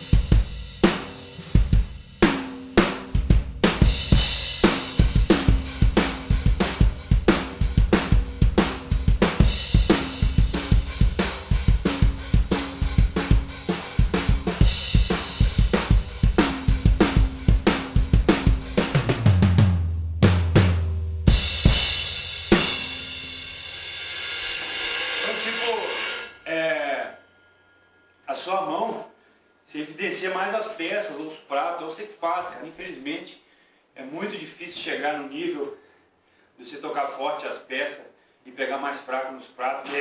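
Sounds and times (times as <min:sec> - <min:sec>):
low ringing drum fill: 0:00.0 - 0:26.5
drum kit groove: 0:00.0 - 0:26.6
crash cymbal hits: 0:21.3 - 0:28.2.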